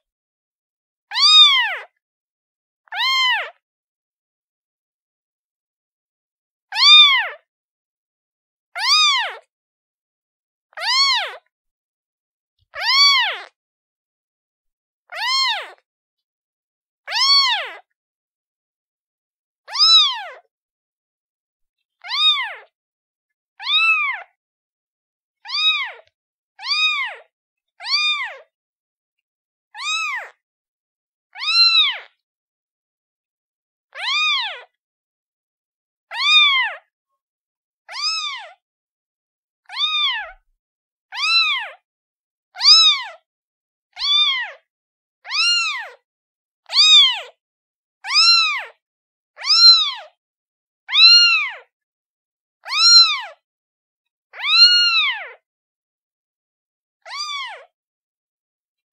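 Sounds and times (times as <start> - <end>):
kitten meowing: 1.1 - 1.9, 2.9 - 3.5, 6.7 - 7.3, 8.8 - 9.4, 10.8 - 11.4, 12.8 - 13.4, 15.1 - 15.8, 17.1 - 17.8, 19.7 - 20.4, 22.0 - 22.6, 23.6 - 24.3, 25.4 - 27.2, 27.8 - 28.4, 29.8 - 30.3, 31.4 - 32.1, 34.0 - 34.6, 36.1 - 36.8, 37.9 - 38.5, 39.7 - 40.4, 41.1 - 41.8, 42.6 - 43.0, 44.0 - 44.5, 45.3 - 46.0, 46.7 - 47.2, 48.1 - 48.8, 49.4 - 50.0, 50.9 - 51.6, 52.6 - 53.3, 54.4 - 55.3, 57.1 - 57.6.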